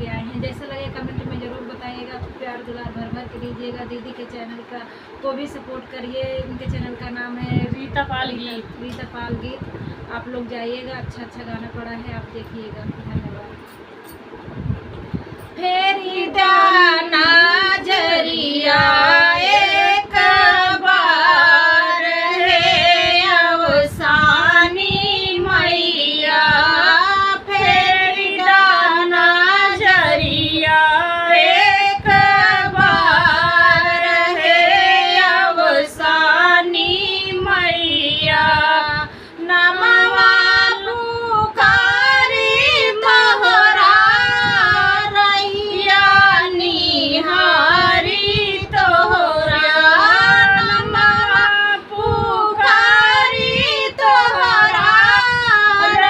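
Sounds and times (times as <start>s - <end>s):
woman singing folk song: 15.6s - 56.0s.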